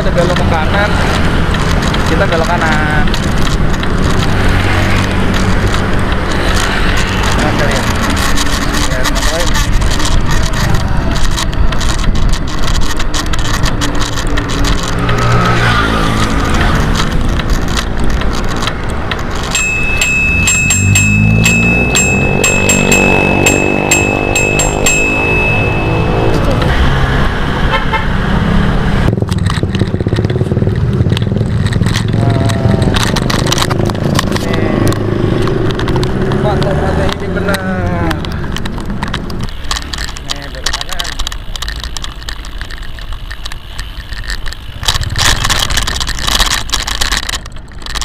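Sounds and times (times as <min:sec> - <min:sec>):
bicycle rattling and clattering: 0:00.0 - 0:27.5, 0:28.3 - 0:48.0
road traffic: 0:00.0 - 0:48.0
engine going by: 0:14.1 - 0:17.6, 0:19.6 - 0:40.1.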